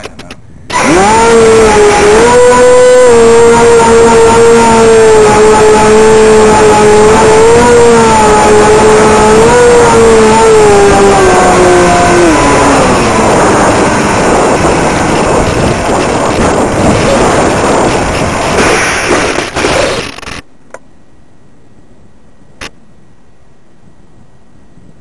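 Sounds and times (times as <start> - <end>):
wind noise on microphone: 0.0 - 20.5, 21.4 - 25.0
electric rc plane motor whine: 0.7 - 20.1.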